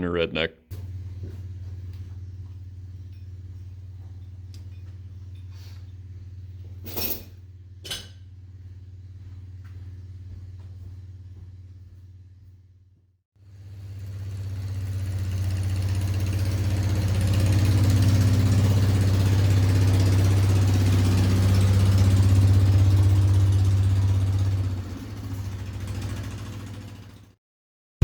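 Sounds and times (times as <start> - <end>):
vehicle engine running: 0.7 - 27.4.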